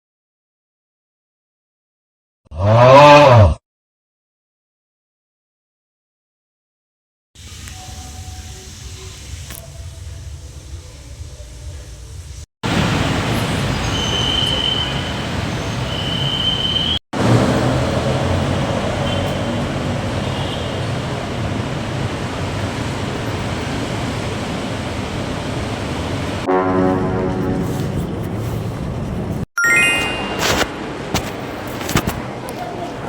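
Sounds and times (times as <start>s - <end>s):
road traffic noise: 7.4s - 33.0s
short high beeps: 29.6s - 30.4s.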